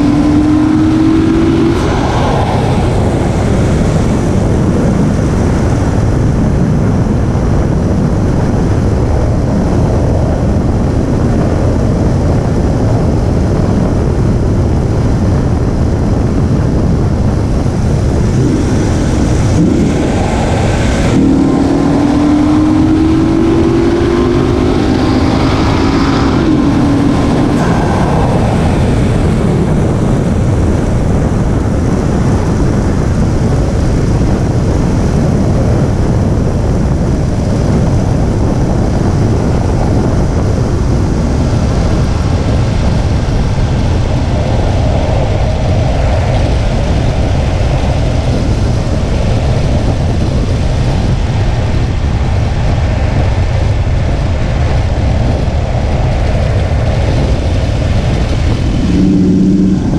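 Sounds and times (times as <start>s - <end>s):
low rising tone: 0.0s - 4.4s, 17.2s - 31.1s, 58.2s - 59.9s
car engine: 0.0s - 12.4s, 15.7s - 34.8s, 53.7s - 59.9s
road noise: 0.0s - 59.9s.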